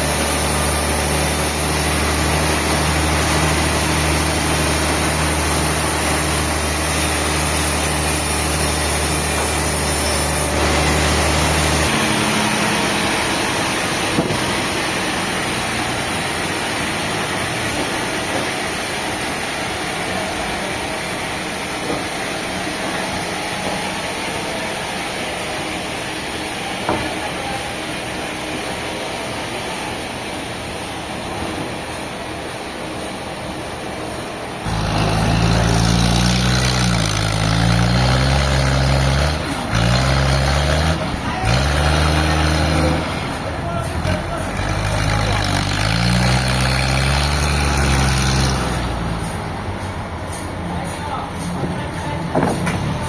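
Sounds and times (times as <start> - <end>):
sawmill machinery din: 0.0 - 53.0
low motor hum: 34.6 - 50.5.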